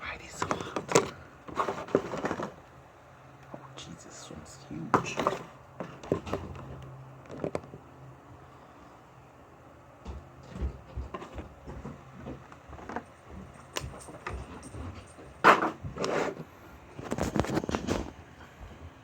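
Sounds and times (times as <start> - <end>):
scraping handling sounds: 0.3 - 2.7, 4.8 - 7.8, 11.1 - 18.2
objects clattering: 0.4 - 2.6, 4.9 - 7.8, 10.1 - 16.4
small knocks and clicks: 5.0 - 7.9, 10.0 - 16.1.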